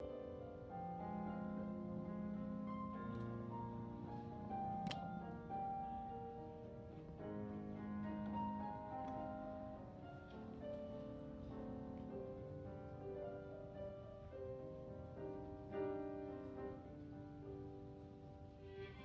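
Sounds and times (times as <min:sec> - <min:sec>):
gentle piano music: 0:00.0 - 0:19.0.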